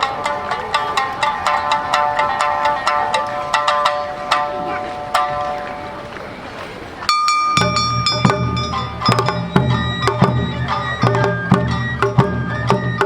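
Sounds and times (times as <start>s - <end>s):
pitched dance melody: 0.0s - 6.1s, 7.1s - 13.0s
ringing metallic strike: 7.1s - 11.8s
low drumming: 7.2s - 13.0s.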